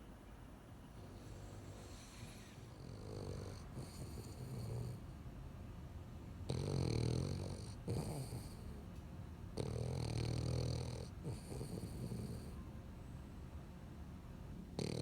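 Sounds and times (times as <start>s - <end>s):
dog snoring: 1.0s - 5.2s, 6.4s - 8.9s, 9.6s - 12.6s, 14.8s - 15.0s.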